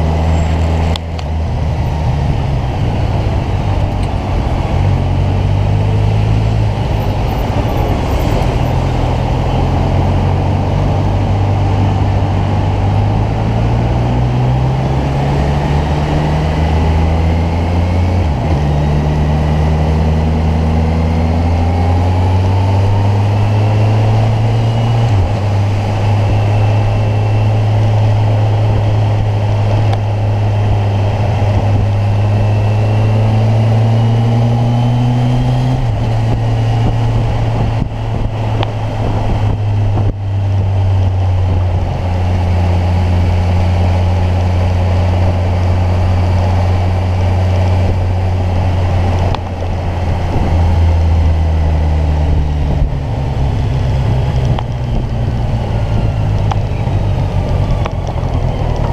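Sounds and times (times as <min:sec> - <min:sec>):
motorcycle engine running: 0:00.0 - 0:58.9.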